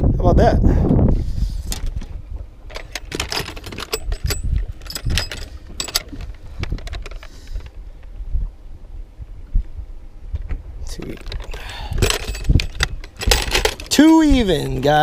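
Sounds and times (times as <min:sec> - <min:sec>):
small metallic clicks and rattles: 0:02.7 - 0:07.8, 0:10.9 - 0:15.0.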